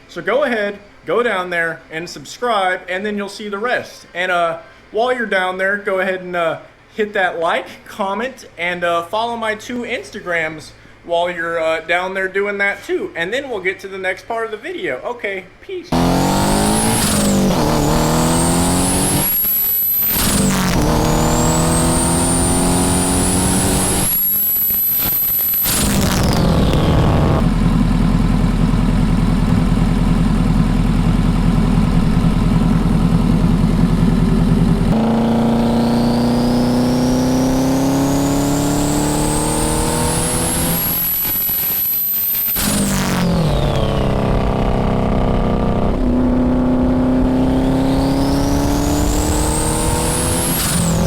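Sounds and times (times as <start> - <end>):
car engine accelerating: 15.9 - 51.0
high turbo whistle: 16.0 - 30.9
steady cruising engine drone: 26.9 - 35.0.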